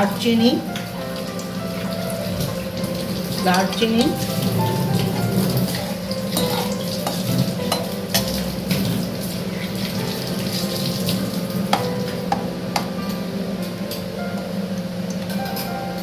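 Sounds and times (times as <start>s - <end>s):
oil sizzling in a pan: 0.0s - 12.4s.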